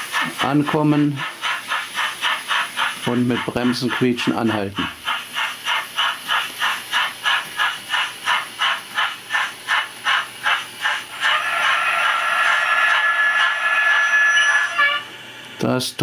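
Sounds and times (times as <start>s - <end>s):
model locomotive running sound: 0.0s - 16.0s
high brake squeal: 12.6s - 15.1s.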